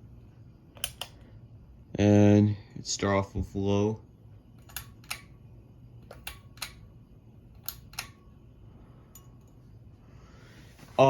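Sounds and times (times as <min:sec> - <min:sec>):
faint low hum: 0:00.0 - 0:11.0
pull-chain switch clicking: 0:00.8 - 0:01.2, 0:04.6 - 0:05.4, 0:06.0 - 0:06.9, 0:07.6 - 0:08.3.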